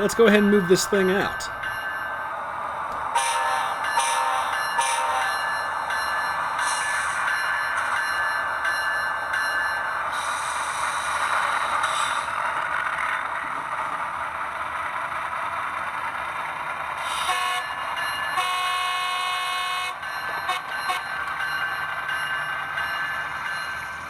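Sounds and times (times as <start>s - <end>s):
model train horn: 18.4s - 19.9s.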